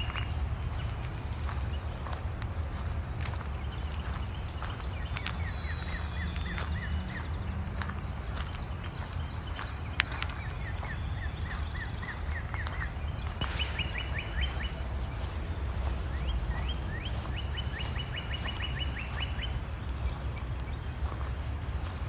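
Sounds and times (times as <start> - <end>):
low rumble: 13.2 - 22.0
songbird singing quick high notes: 13.4 - 19.5.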